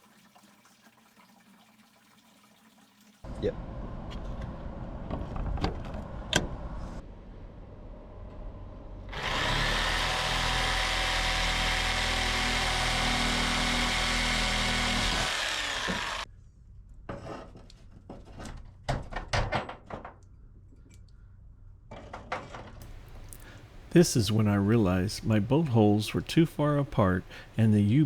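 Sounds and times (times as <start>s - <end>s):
power tool motor running: 9.1s - 16.2s.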